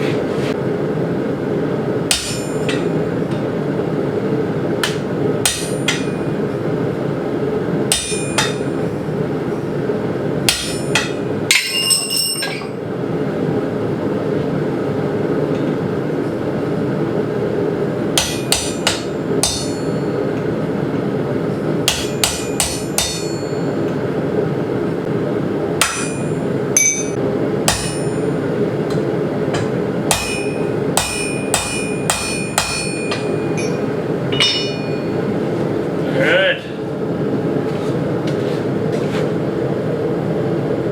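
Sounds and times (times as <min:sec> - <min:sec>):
hammer striking steel: 0:02.1 - 0:03.0, 0:04.8 - 0:06.3, 0:07.9 - 0:08.8, 0:10.5 - 0:12.7, 0:18.2 - 0:20.2, 0:21.9 - 0:23.9, 0:25.8 - 0:28.3, 0:29.5 - 0:35.4.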